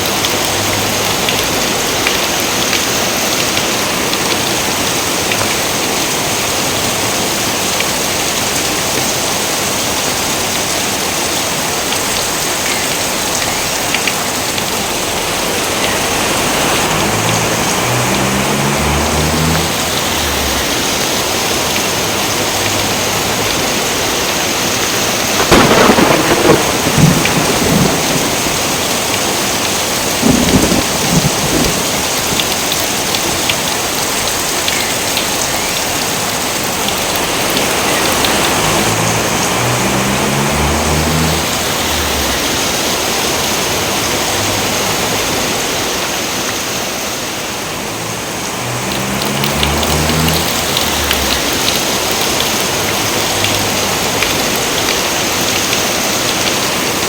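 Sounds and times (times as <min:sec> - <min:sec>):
heavy rain: 0:00.0 - 0:57.0
thunder rumbling: 0:25.0 - 0:33.1, 0:36.7 - 0:44.8, 0:48.0 - 0:54.9.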